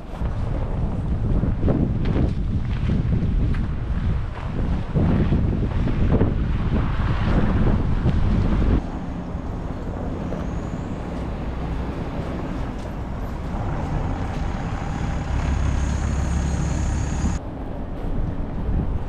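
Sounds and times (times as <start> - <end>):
large engine low rumble: 0.0 - 19.0
faint high whine: 8.8 - 17.4.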